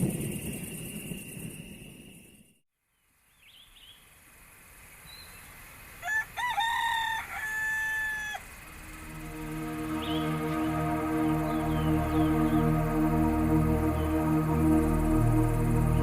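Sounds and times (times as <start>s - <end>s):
small birds chirping: 2.9s - 5.8s, 7.8s - 14.8s
rooster crowing: 6.0s - 10.6s
soft music: 8.8s - 16.0s.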